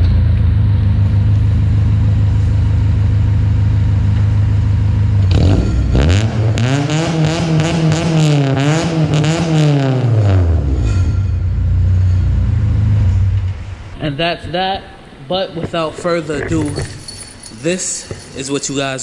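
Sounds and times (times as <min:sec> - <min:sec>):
car engine idling and revving: 0:00.0 - 0:13.9.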